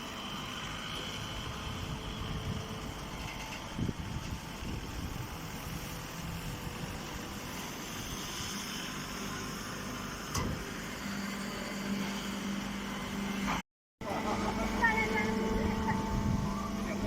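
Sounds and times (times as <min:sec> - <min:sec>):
hay baler humming: 0:10.8 - 0:17.0.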